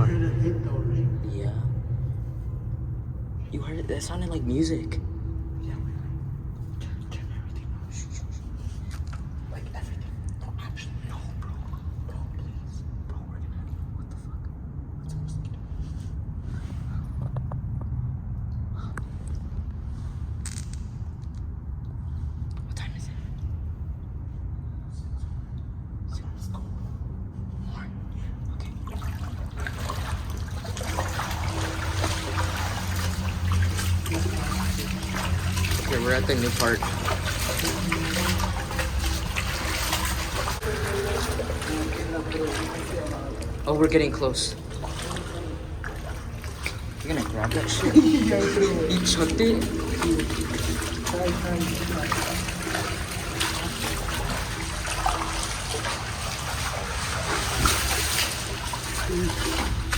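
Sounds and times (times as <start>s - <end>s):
water trickling in a tunnel: 0.0s - 17.3s, 26.2s - 59.9s
low steady hum: 0.0s - 59.9s
footsteps in shallow water: 28.6s - 59.9s.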